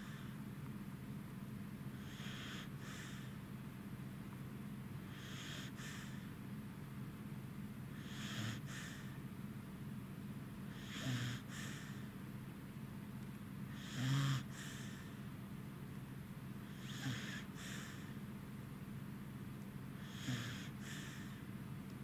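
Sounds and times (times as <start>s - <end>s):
dog snoring: 0.0s - 0.3s, 1.9s - 3.4s, 5.0s - 6.3s, 7.9s - 9.2s, 10.7s - 12.1s, 13.7s - 15.2s, 16.6s - 18.2s, 20.0s - 21.5s.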